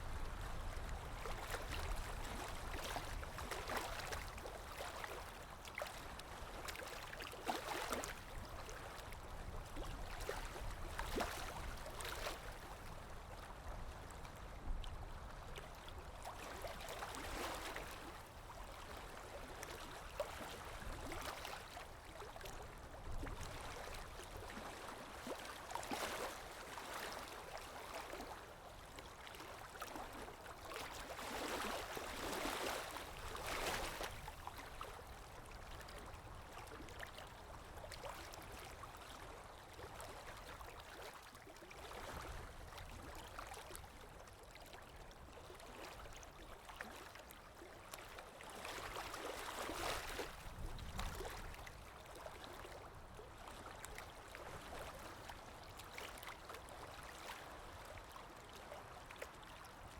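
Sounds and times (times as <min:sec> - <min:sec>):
water lapping against shore: 0:00.0 - 0:14.2, 0:14.8 - 0:59.9
wind: 0:00.0 - 0:59.9.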